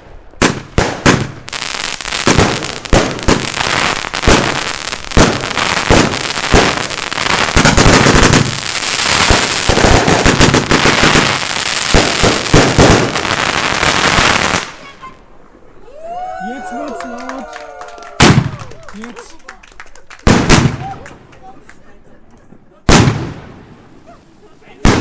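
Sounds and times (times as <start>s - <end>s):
fireworks firing sharp bangs: 0.0s - 15.4s, 18.2s - 18.6s, 20.2s - 21.3s, 22.9s - 25.0s
dense firework crackling: 0.0s - 16.3s, 17.3s - 21.8s, 22.9s - 25.0s.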